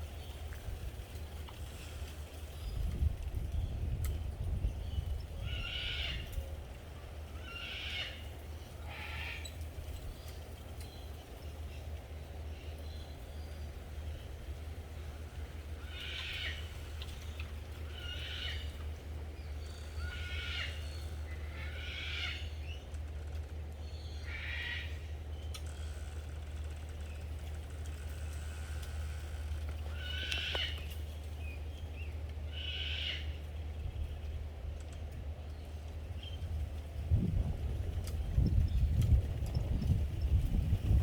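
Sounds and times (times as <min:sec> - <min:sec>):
steady low rumble: 0:00.0 - 0:41.0
high animal calls: 0:28.4 - 0:30.9.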